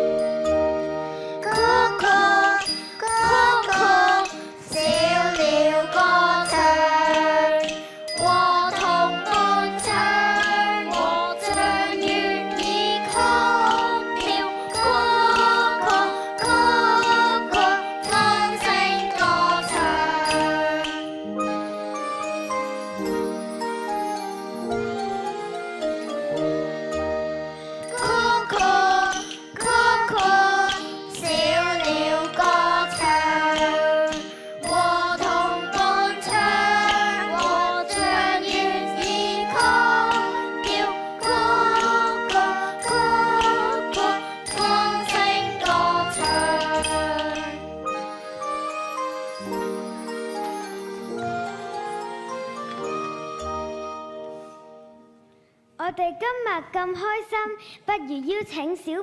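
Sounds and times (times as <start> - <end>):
tinkling percussion: 0.0 - 55.1
children's ensemble playing music: 0.0 - 55.7
instrumental accompaniment: 0.0 - 55.8
light chiming tinkles: 1.4 - 10.6, 46.0 - 54.8.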